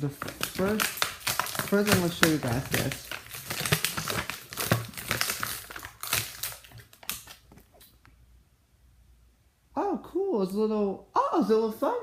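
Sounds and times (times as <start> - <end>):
plastic packaging crinkling: 0.0 - 8.0.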